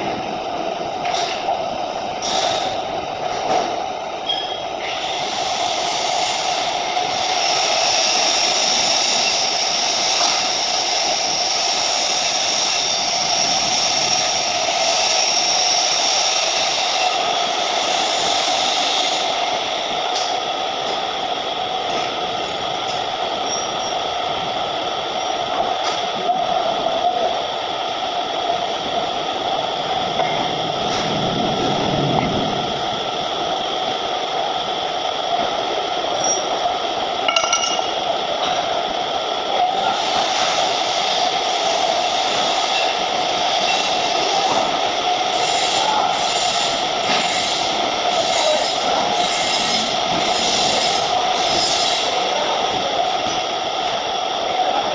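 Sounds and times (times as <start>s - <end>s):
welding arc hissing: 2.1s - 3.1s, 4.8s - 21.6s, 39.8s - 52.2s.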